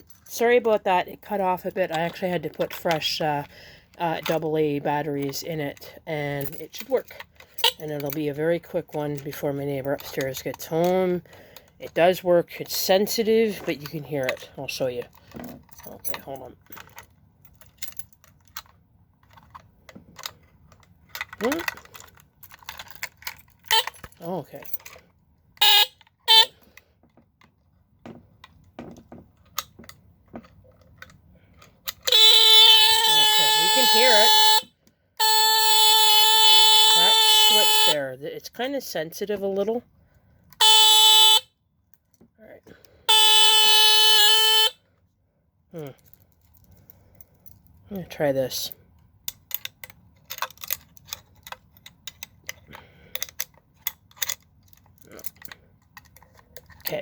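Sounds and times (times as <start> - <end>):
chain clinking: 0.0 - 0.4, 13.5 - 25.1, 33.0 - 34.4
burglar alarm horn buzzing: 7.6 - 8.2, 23.7 - 24.0, 25.6 - 26.8, 32.0 - 38.1, 40.6 - 41.5, 43.1 - 44.8
clicks and knocks of handling: 13.5 - 25.2, 26.0 - 32.2, 48.7 - 57.0.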